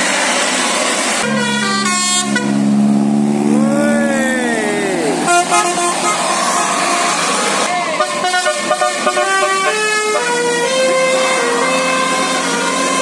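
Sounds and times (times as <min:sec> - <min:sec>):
bus musical horn playing: 0:01.2 - 0:04.1, 0:05.2 - 0:13.0
siren-like rising and falling tone: 0:01.2 - 0:07.4.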